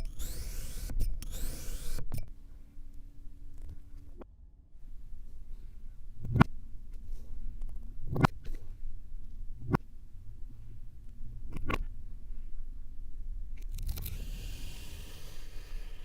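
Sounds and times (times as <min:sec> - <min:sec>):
low steady rumble: 0:00.0 - 0:16.0.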